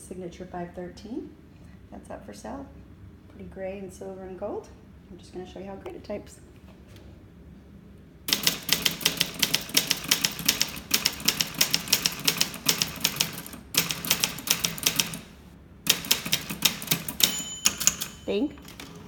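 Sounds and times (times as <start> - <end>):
typewriter keys clacking: 8.3 - 15.2, 15.9 - 19.0.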